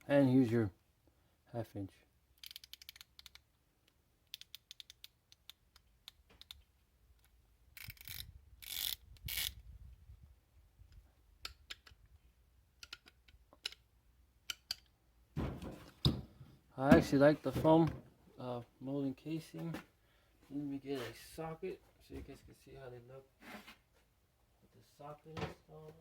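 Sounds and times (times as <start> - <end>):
hand ratchet clicking: 2.4 - 3.5, 4.3 - 6.6, 7.8 - 9.6, 12.8 - 13.8
handling knocks and rustles: 15.3 - 18.3.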